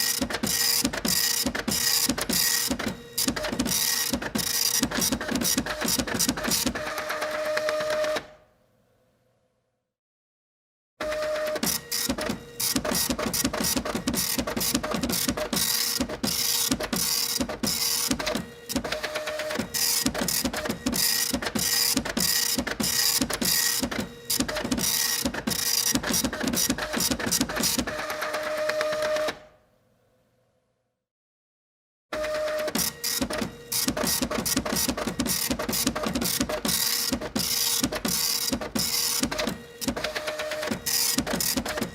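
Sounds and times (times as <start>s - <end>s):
printer clicking chatter: 0.0s - 8.2s, 11.1s - 29.4s, 32.2s - 41.9s
printer motor tone: 0.0s - 8.2s, 11.0s - 29.4s, 32.2s - 41.9s.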